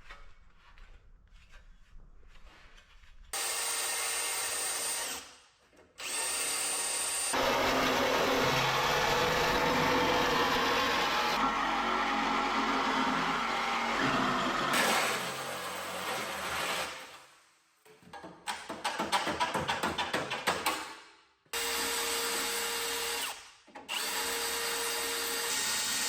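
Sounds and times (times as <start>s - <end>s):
high-speed power tool whining: 6.0s - 14.8s.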